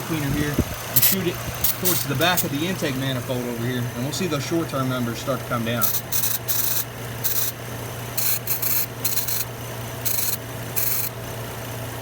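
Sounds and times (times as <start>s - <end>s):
engine idling hum: 0.0s - 12.0s
aerosol spray hissing: 8.2s - 9.4s.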